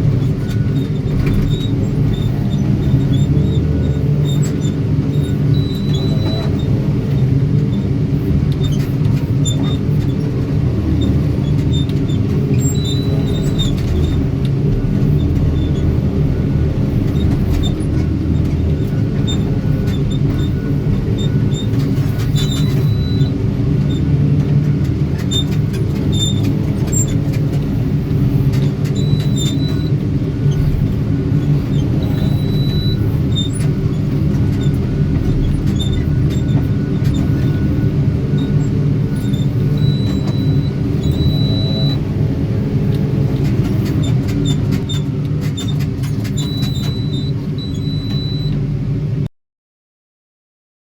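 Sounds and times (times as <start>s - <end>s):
heavy diesel engine rumbling: 0.0s - 49.3s
faint high beeps: 5.2s - 6.6s, 31.8s - 33.6s, 34.5s - 42.1s, 46.4s - 48.6s.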